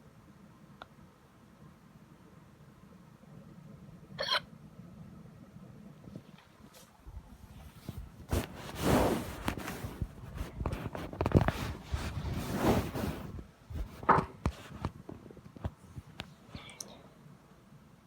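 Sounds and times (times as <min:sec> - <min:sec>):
rustling and handling noise: 0:06.0 - 0:16.9.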